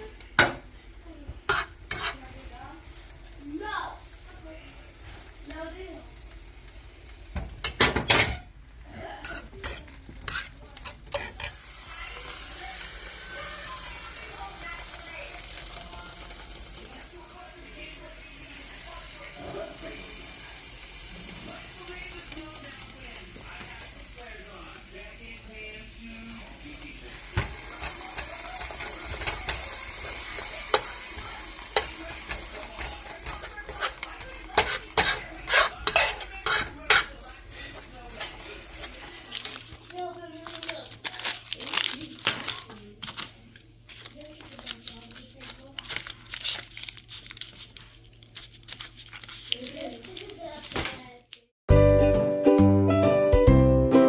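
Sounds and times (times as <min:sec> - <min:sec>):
food sizzling: 0:00.0 - 0:42.6
metal utensil scraping a frying pan: 0:01.4 - 0:02.5, 0:09.2 - 0:11.6, 0:27.1 - 0:39.3.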